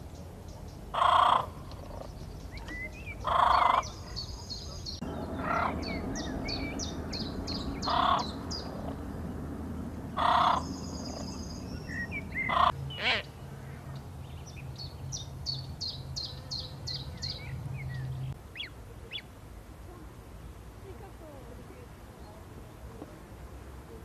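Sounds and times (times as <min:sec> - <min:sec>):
low steady hum: 0:00.0 - 0:24.0
louder bird calls: 0:00.9 - 0:09.3, 0:10.1 - 0:13.9
high bird chirps: 0:02.0 - 0:09.1, 0:10.2 - 0:13.1.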